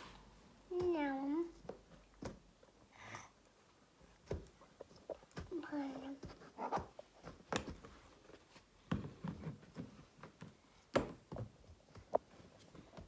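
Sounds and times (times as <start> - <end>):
soft handling noise: 3.5 - 13.0.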